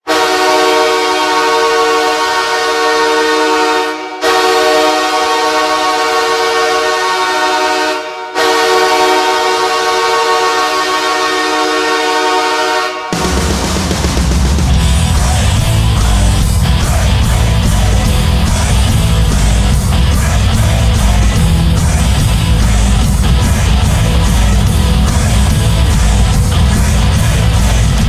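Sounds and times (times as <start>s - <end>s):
arena goal horn blasts: 0.0s - 13.7s.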